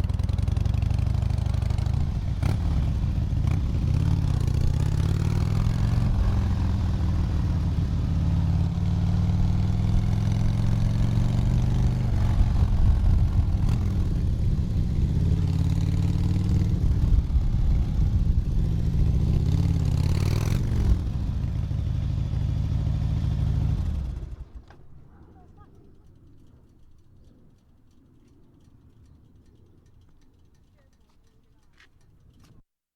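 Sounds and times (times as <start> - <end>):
motorcycle engine revving: 0.0 - 24.7.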